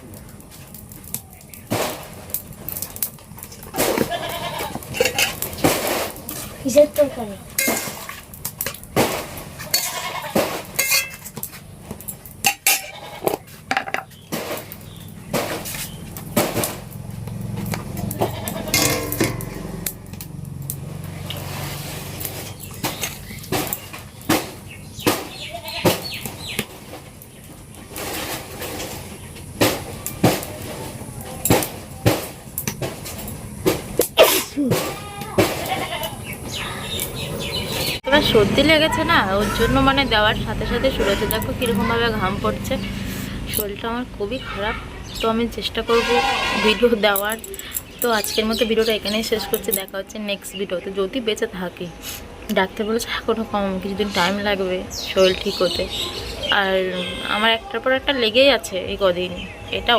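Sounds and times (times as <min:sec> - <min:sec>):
metal utensils clinking on a pot: 0:04.8 - 0:06.5, 0:07.6 - 0:08.9, 0:09.7 - 0:11.5, 0:12.4 - 0:14.1, 0:18.0 - 0:20.3, 0:46.7 - 0:50.0
person sneezing: 0:34.2 - 0:34.8.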